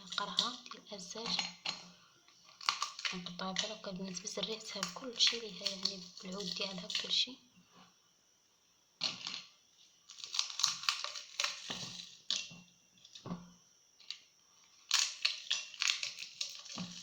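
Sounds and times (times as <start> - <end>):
dried chili peppers crackling: 0.0 - 7.4, 10.0 - 12.5, 14.0 - 17.0.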